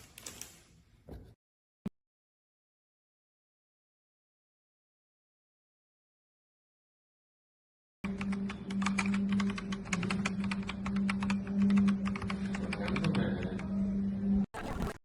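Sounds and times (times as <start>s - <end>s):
mechanical keyboard typing: 8.2s - 13.1s.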